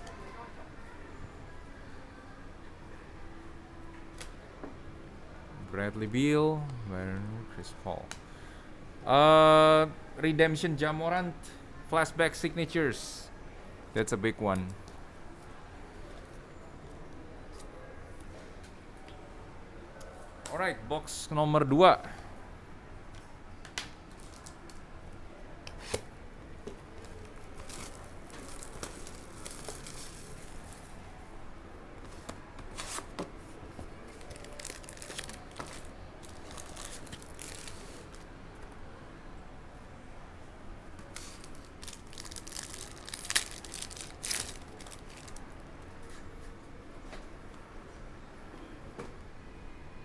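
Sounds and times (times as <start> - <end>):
card packs rustling and crinkling: 26.8 - 31.1, 32.2 - 38.3, 41.1 - 45.6.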